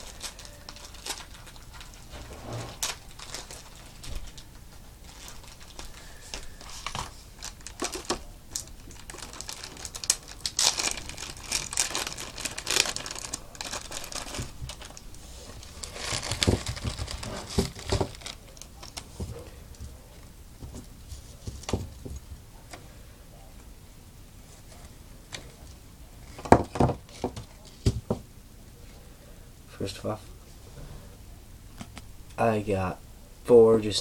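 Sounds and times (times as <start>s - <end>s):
packaging crinkling and tearing: 0.0s - 20.0s.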